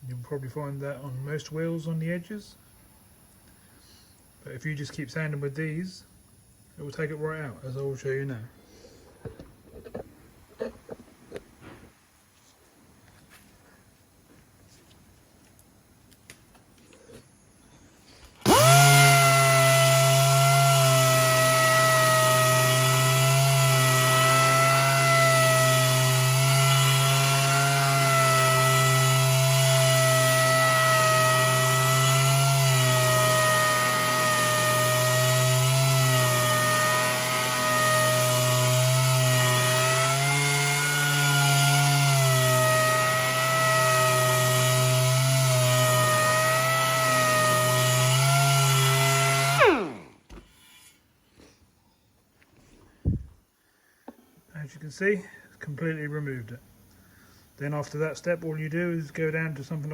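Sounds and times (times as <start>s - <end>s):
electric sander whining: 18.4s - 50.9s.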